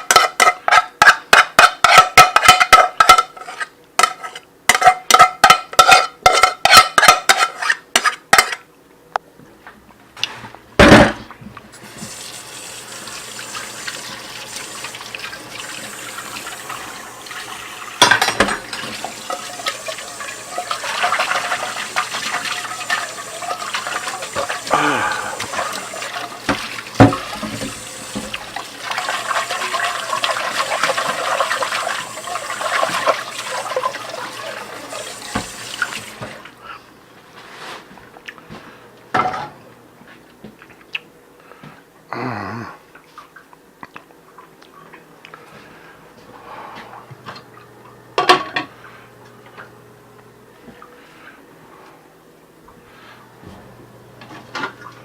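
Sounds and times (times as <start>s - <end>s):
tap water running into sink: 11.8s - 36.5s.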